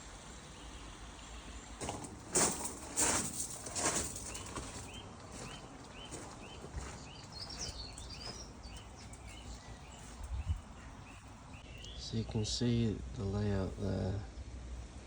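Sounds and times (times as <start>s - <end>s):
bird twittering: 4.2s - 12.3s
small bird chirping: 4.2s - 12.3s.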